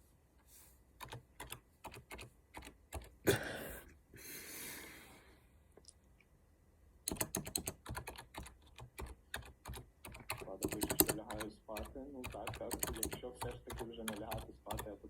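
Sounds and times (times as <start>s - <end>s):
keyboard typing clicks: 1.0s - 3.2s, 7.1s - 15.0s.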